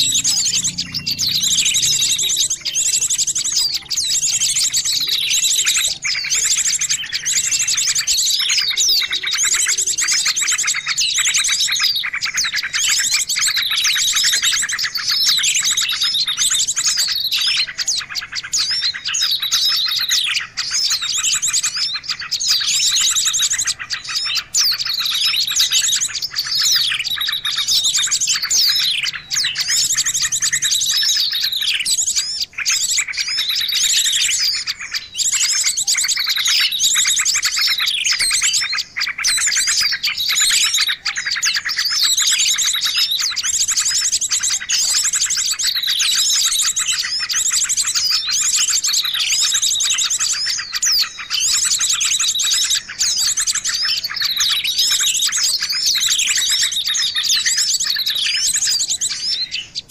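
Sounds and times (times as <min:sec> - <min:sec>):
songbirds chirping: 0:00.0 - 0:59.9.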